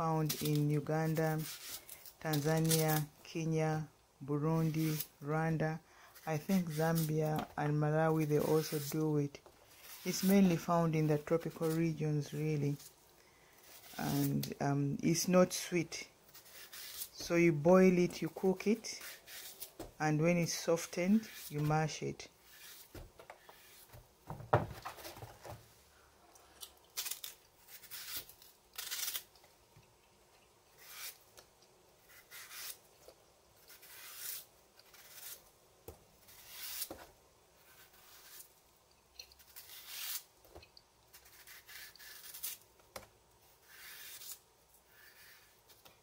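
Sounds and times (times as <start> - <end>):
knife scraping banana peel: 0.2 - 3.1, 4.6 - 5.2, 6.1 - 7.4, 8.0 - 12.9, 13.6 - 24.0, 26.9 - 29.4, 30.7 - 31.4, 32.0 - 35.5, 36.2 - 37.0, 37.6 - 38.6, 39.2 - 40.3, 41.1 - 42.7, 43.4 - 46.0.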